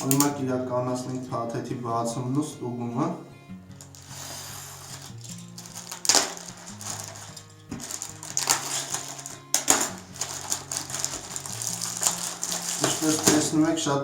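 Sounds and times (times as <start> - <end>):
packaging crinkling and tearing: 0.0 - 0.4, 3.8 - 13.7
background music low notes: 0.0 - 14.0.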